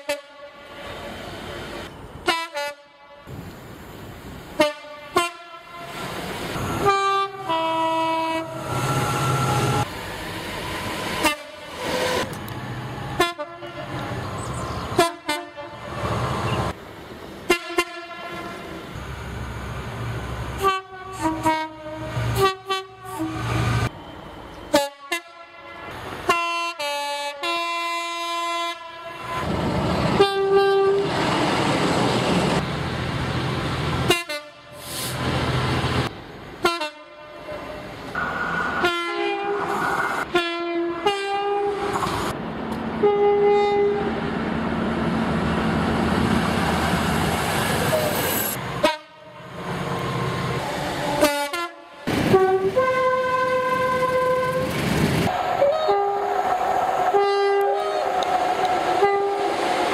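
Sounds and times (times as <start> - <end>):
two-tone train horns: 0.0 - 1.0, 2.2 - 3.3, 4.6 - 6.0, 6.6 - 9.9, 11.2 - 11.8, 13.1 - 14.0, 15.0 - 16.0, 17.5 - 18.6, 20.6 - 23.9, 24.7 - 29.5, 30.1 - 31.2, 34.0 - 34.9, 36.6 - 37.9, 38.7 - 42.0, 43.0 - 44.2, 48.8 - 49.4, 51.1 - 54.7, 55.3 - 59.9
rumble of passing trains: 0.0 - 59.9.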